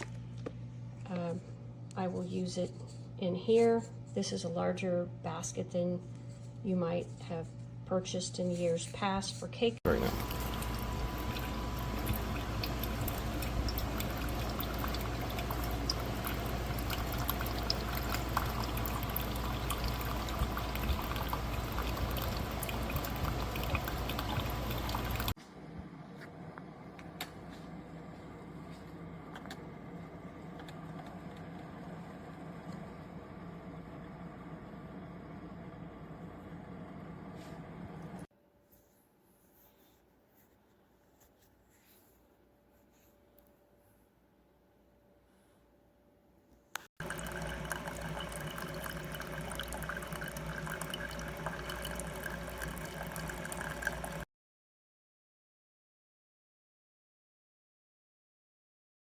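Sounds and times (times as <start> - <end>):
coffee maker humming: 9.8 - 38.3, 47.0 - 54.2.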